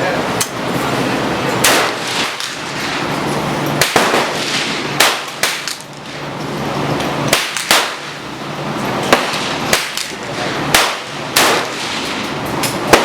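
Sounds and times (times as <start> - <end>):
gunshots with echo: 1.6 - 2.8, 3.8 - 5.8, 7.3 - 8.2, 9.1 - 12.2.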